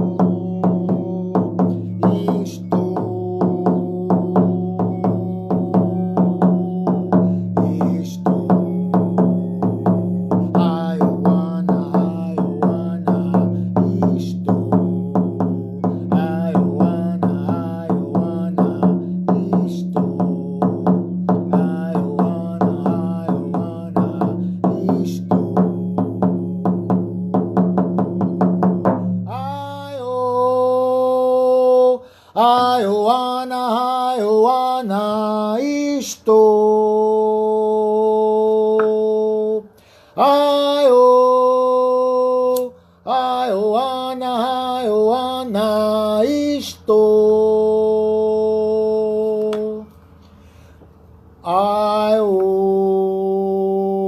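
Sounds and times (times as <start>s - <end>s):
hand drum beating: 0.0s - 30.0s
person chanting: 0.0s - 49.9s, 51.4s - 54.0s.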